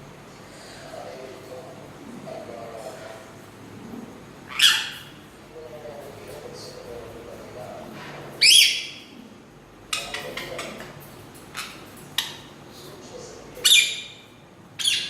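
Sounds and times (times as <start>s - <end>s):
parrot shrill screeches: 4.5s - 5.1s.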